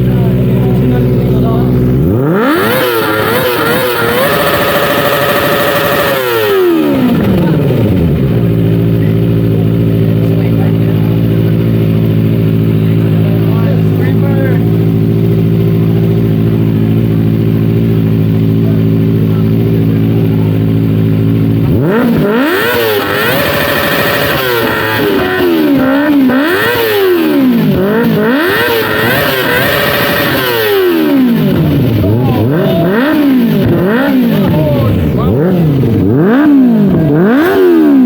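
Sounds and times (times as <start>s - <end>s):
motorcycle engine idling: 0.0s - 38.0s
motorcycle engine revving: 0.0s - 38.0s.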